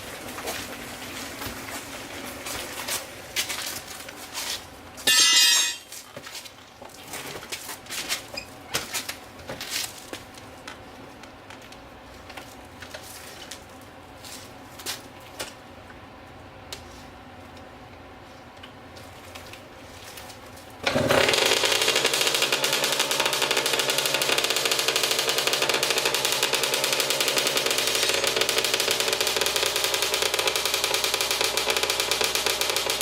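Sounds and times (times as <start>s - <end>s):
two-stroke engine running: 20.8s - 33.0s.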